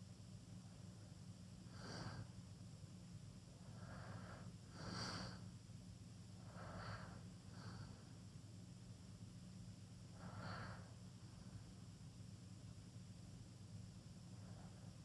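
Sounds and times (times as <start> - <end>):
person snoring faintly: 1.7 - 2.3, 3.6 - 5.5.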